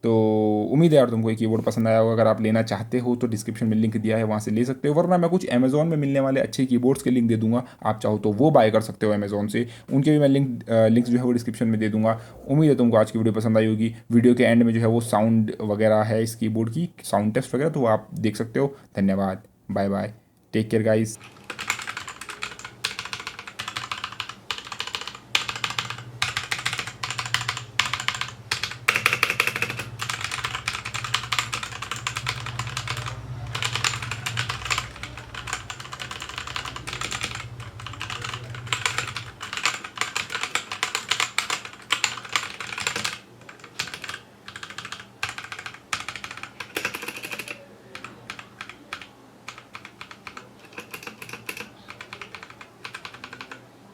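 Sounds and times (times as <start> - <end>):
mechanical keyboard typing: 21.2 - 53.7.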